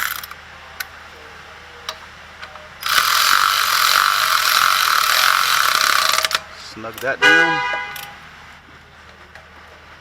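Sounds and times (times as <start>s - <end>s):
ratchet wrench clicking rapidly: 0.0s - 0.4s, 2.8s - 6.4s.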